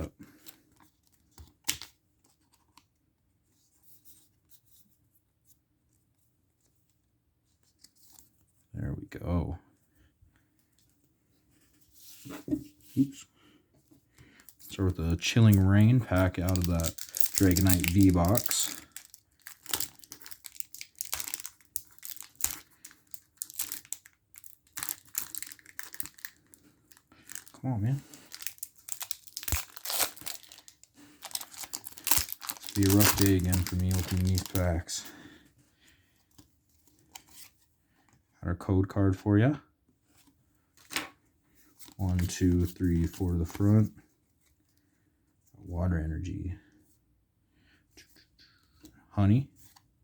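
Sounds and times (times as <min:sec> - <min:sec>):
soft plastic rustling: 0:00.0 - 0:38.3, 0:39.9 - 0:45.7
foil wrapper crinkling: 0:14.7 - 0:34.9.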